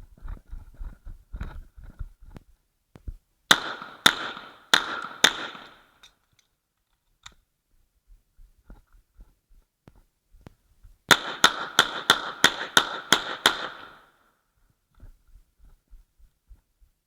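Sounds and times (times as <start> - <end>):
pistol shots with ringing echo: 3.5 - 6.0, 11.1 - 14.2.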